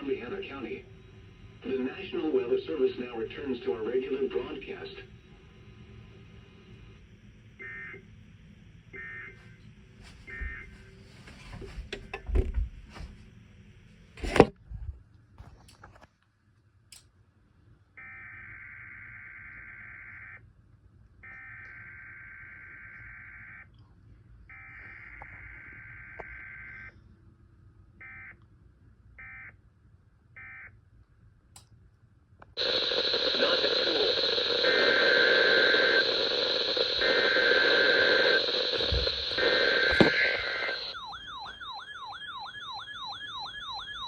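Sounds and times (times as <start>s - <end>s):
radio crackling: 0.0s - 7.0s, 9.0s - 13.3s, 14.1s - 14.6s, 32.4s - 42.5s
warbling data bursts: 32.6s - 43.8s.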